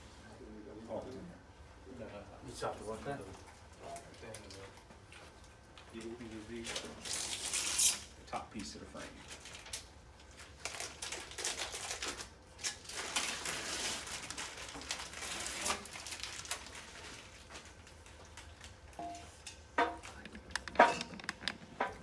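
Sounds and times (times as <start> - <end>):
clicks and taps of parts: 19.0 - 22.0.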